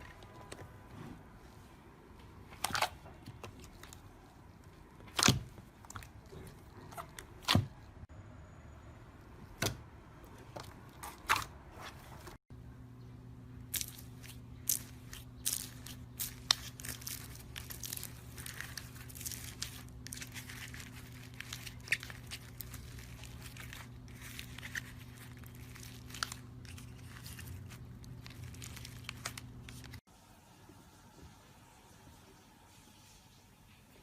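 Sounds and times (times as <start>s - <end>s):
low steady hum: 0.0s - 32.8s
crunchy material crackling by hand: 13.7s - 30.1s.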